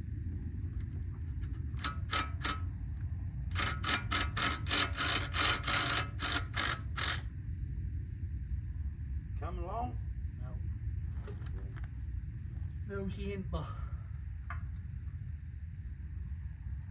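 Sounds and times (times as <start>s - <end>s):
steady low rumble: 0.0s - 16.9s
hand tools striking metal: 1.8s - 2.6s, 3.5s - 7.2s.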